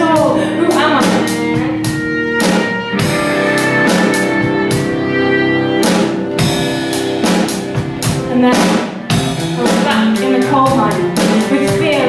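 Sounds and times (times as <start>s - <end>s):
guitar: 0.0s - 12.0s
bowed strings holding chords: 0.6s - 8.3s.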